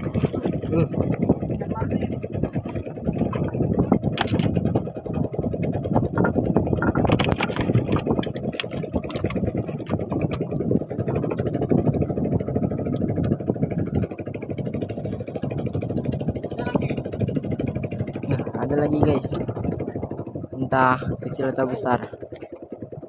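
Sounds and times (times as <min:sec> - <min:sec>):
boat engine running: 0:00.0 - 0:23.0.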